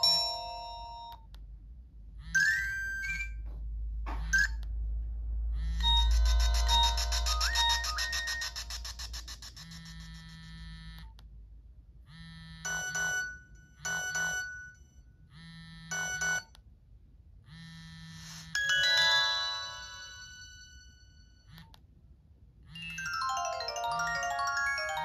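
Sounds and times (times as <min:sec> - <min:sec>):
electronic ringtone: 0:00.0 - 0:01.2, 0:02.2 - 0:03.5, 0:04.2 - 0:04.6, 0:05.5 - 0:11.0, 0:12.2 - 0:16.5, 0:17.5 - 0:21.6, 0:22.7 - 0:25.0
bright phone chimes: 0:05.7 - 0:10.0.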